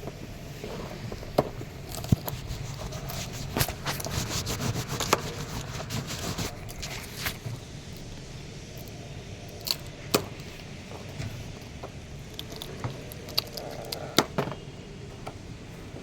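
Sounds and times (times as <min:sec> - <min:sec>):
rough scraping on metal: 0:01.9 - 0:07.4
hand tools clicking on metal: 0:08.7 - 0:15.4.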